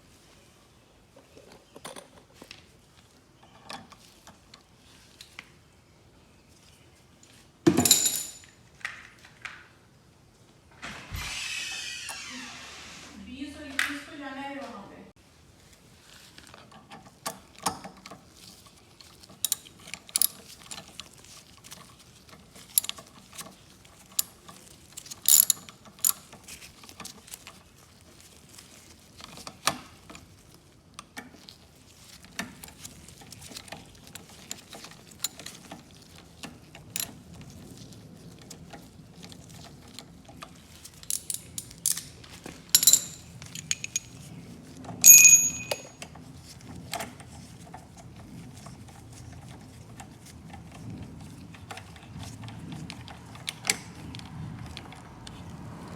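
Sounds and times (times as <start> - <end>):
hand tools clicking on metal: 19.4 - 20.9, 24.2 - 26.3, 41.0 - 44.2, 45.0 - 46.0
ringing metallic knocks: 45.1 - 45.9.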